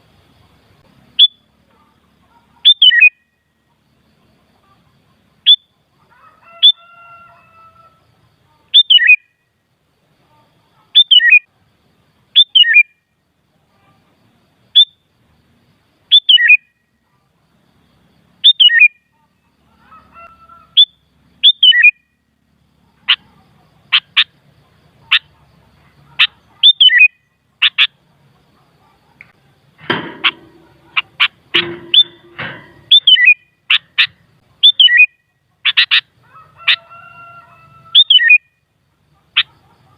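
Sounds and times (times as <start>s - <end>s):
bulbul calling: 1.1s - 3.4s, 8.6s - 9.4s, 10.7s - 11.5s, 12.3s - 13.0s, 14.7s - 15.0s, 16.1s - 16.9s, 18.4s - 22.2s, 22.8s - 36.9s, 37.9s - 38.6s, 39.2s - 39.9s.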